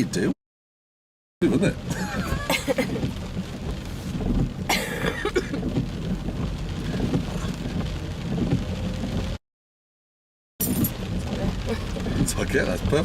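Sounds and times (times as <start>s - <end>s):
rain on a car roof: 0.0s - 0.4s, 1.4s - 9.4s, 10.6s - 13.0s
car low rumble: 1.4s - 9.4s, 10.6s - 13.0s.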